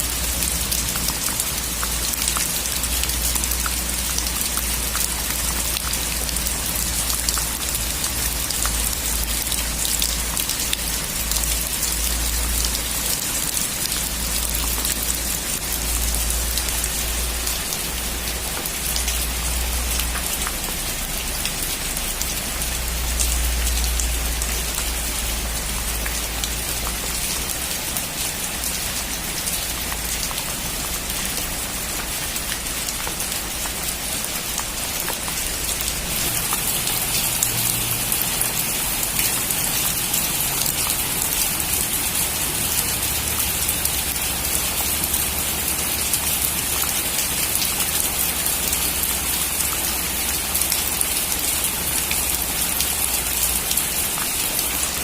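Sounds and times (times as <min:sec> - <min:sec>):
heavy rain on metal roof: 0:00.0 - 0:55.0.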